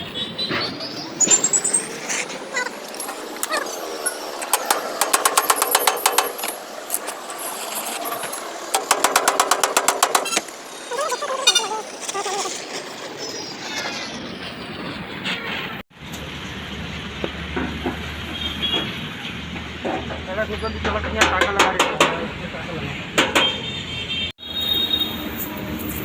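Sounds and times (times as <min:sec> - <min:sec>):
rapid metal-on-metal striking: 0:04.4 - 0:10.9.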